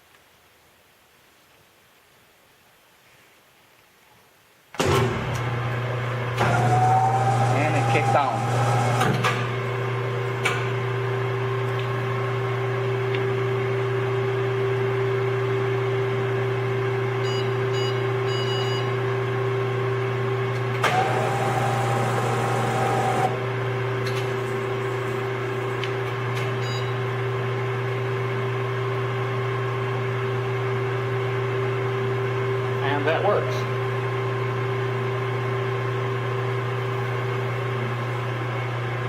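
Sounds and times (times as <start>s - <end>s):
cutter motor humming: 6.4s - 9.1s, 20.8s - 23.4s.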